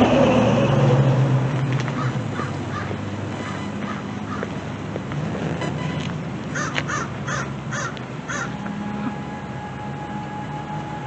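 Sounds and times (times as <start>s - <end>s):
crow cawing: 2.0s - 4.5s, 6.6s - 8.5s.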